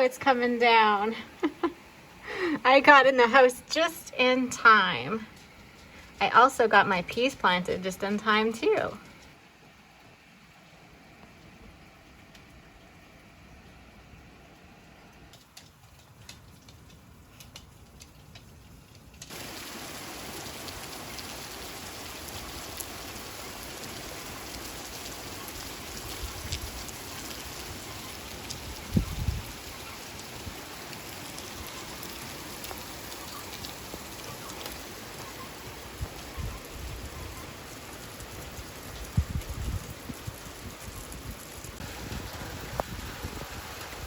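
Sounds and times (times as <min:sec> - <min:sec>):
heavy rain downpour: 0:19.3 - 0:44.0.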